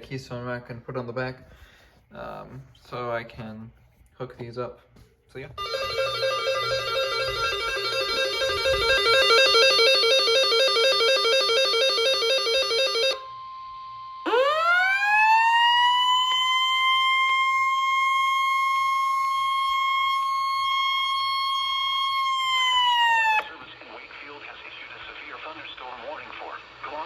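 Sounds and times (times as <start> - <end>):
rising siren-like alert tone: 5.6 - 13.2.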